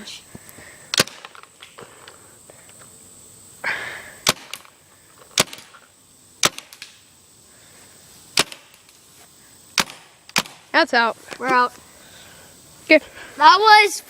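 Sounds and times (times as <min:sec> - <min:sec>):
paintball marker shots: 0:00.9 - 0:01.8, 0:04.2 - 0:04.7, 0:05.3 - 0:05.8, 0:06.4 - 0:07.0, 0:08.3 - 0:09.0, 0:09.8 - 0:10.6.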